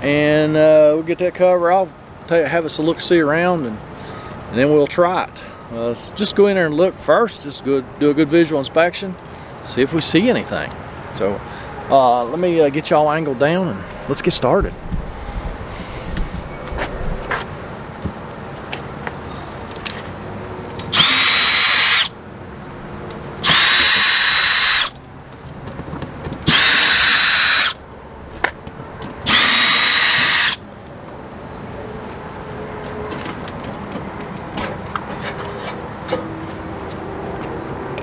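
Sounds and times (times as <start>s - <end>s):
power drill whining: 20.9s - 22.1s, 23.4s - 25.0s, 26.5s - 27.8s, 29.2s - 30.6s.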